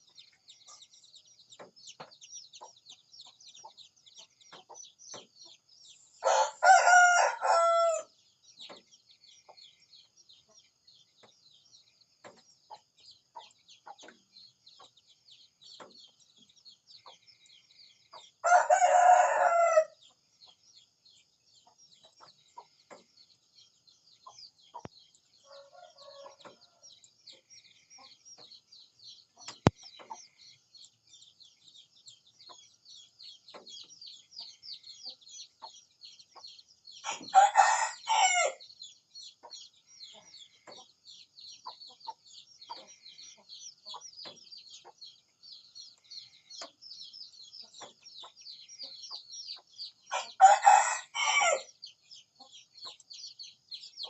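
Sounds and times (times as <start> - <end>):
rooster crowing: 6.2 - 8.1, 18.4 - 20.0, 37.1 - 38.6, 50.1 - 51.7.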